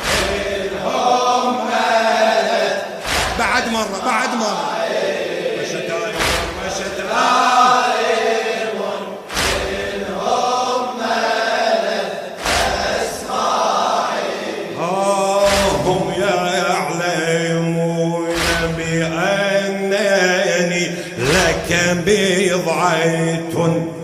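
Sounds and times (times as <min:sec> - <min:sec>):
deep heavy beat: 0:00.0 - 0:01.0, 0:03.0 - 0:04.2, 0:06.2 - 0:07.1, 0:15.4 - 0:16.4, 0:18.3 - 0:19.3.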